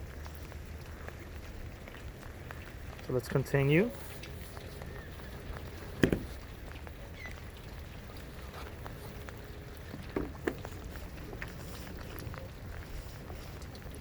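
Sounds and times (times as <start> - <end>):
rain rumble and hiss: 0.0 - 14.0
raindrops ticking: 0.0 - 14.0
sharp knocks: 6.0 - 6.3.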